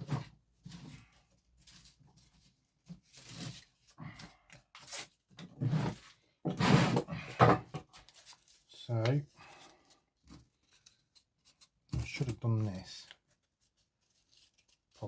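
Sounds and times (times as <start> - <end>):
wooden handle scraping and knocking: 5.5 - 7.9.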